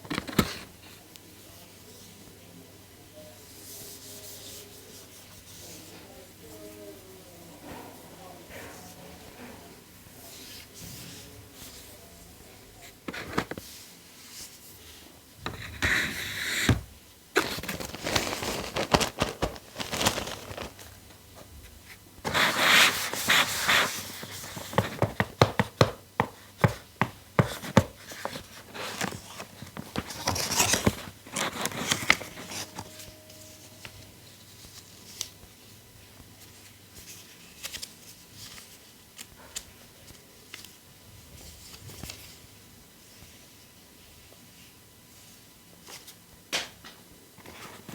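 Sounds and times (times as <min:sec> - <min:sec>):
packaging rustling and scraping: 0:15.5 - 0:34.0.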